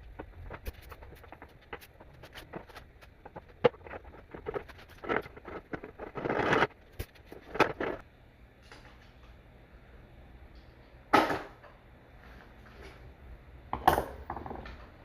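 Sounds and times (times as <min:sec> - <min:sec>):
scraping: 0:00.0 - 0:08.0.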